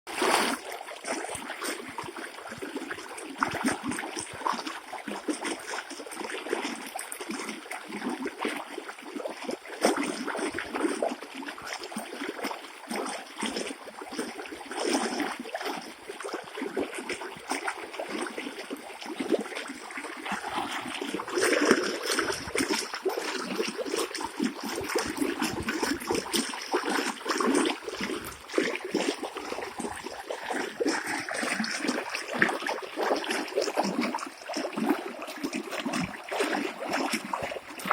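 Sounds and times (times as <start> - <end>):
water gushing and splashing: 0.1 - 37.9.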